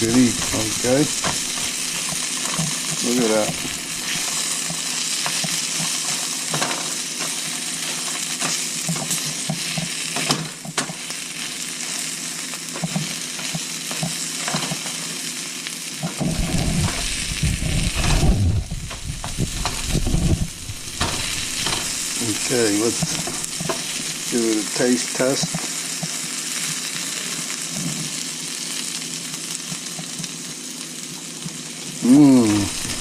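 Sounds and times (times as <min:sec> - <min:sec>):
food sizzling in a pan: 0:00.0 - 0:33.0
low rumble: 0:16.2 - 0:21.8.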